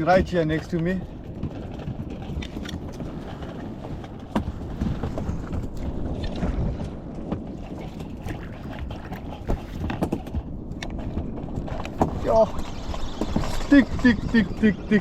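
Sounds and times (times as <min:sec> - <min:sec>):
wind on microphone: 0:00.0 - 0:15.0.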